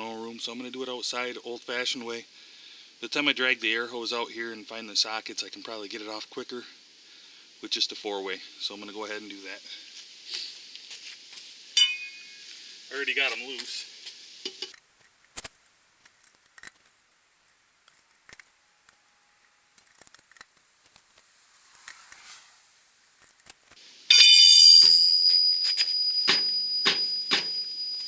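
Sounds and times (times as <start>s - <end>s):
metallic clicks and clinks: 19.8s - 21.9s
high-pitched tone: 24.1s - 28.0s.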